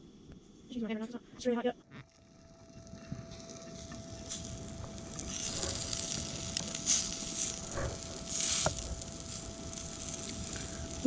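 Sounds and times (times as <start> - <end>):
small pops of frying: 2.0 - 11.0
fish sizzling in a frying pan: 2.6 - 11.0.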